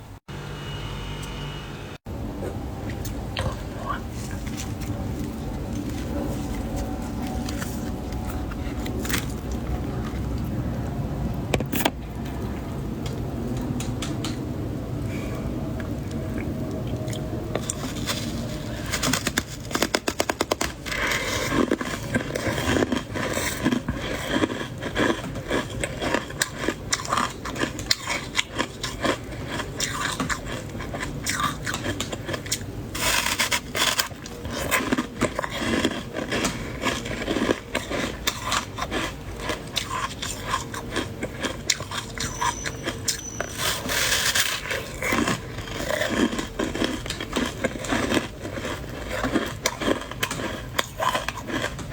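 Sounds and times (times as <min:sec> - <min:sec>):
frost being scraped and crunched: 0:17.6 - 0:26.3, 0:32.9 - 0:36.4, 0:37.0 - 0:51.7.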